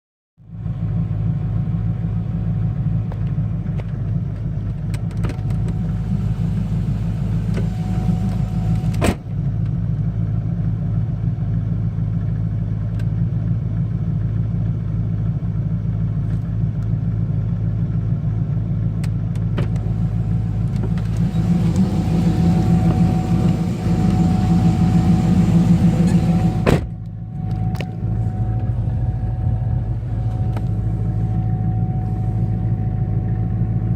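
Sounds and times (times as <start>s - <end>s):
engine and road drone: 0.4s - 33.9s
thin steady whine: 5.4s - 9.0s, 19.7s - 33.9s.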